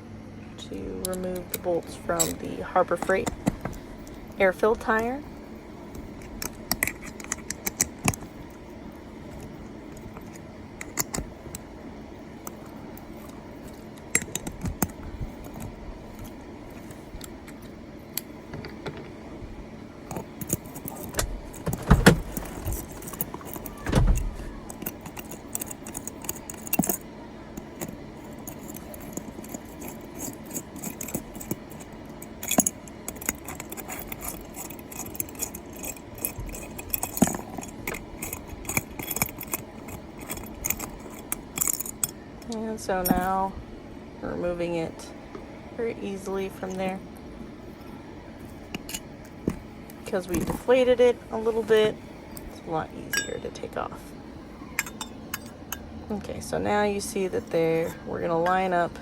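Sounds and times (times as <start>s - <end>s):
wrench clinking on bolts: 20.1s - 27.0s, 27.6s - 42.2s, 53.1s - 53.4s, 54.8s - 55.9s.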